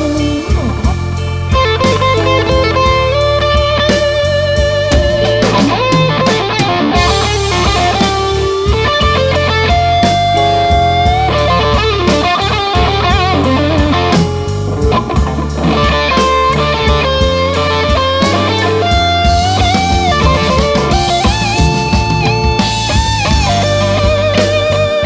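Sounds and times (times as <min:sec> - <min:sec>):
bass and drums: 0:00.0 - 0:25.0
electric guitar solo: 0:00.0 - 0:25.0.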